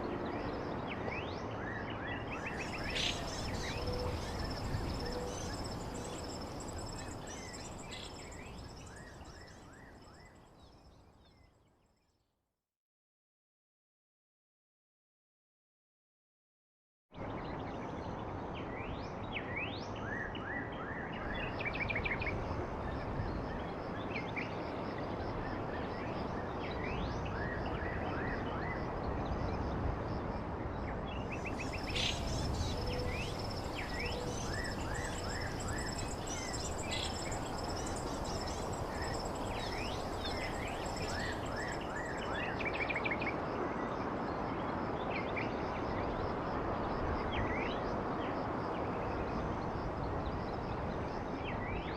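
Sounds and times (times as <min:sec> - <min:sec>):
small birds chirping: 0:02.4 - 0:09.6, 0:31.4 - 0:42.3
background hiss: 0:31.4 - 0:42.2.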